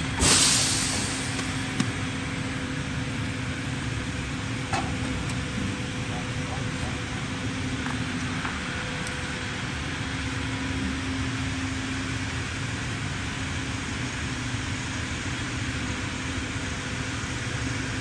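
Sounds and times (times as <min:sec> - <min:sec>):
panel saw machine running: 0:00.0 - 0:09.0.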